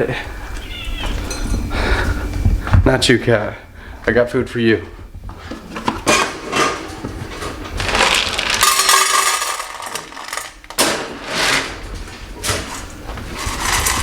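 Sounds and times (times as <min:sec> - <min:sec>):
kibble rattling in bowls: 0:05.7 - 0:14.0.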